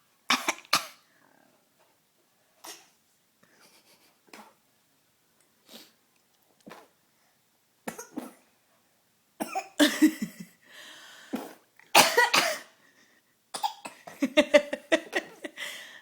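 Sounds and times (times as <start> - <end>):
baby coughing: 0.3 - 1.0, 9.4 - 10.1, 12.0 - 12.7, 13.6 - 14.2.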